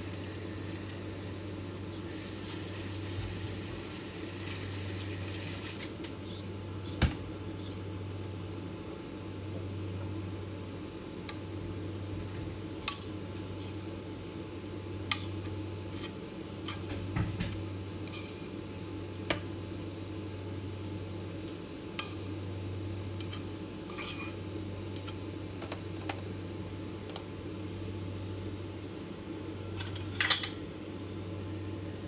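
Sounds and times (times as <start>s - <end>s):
steady low hum: 0.0s - 32.0s
utensils clinking against dishes: 23.2s - 24.4s, 29.8s - 30.6s.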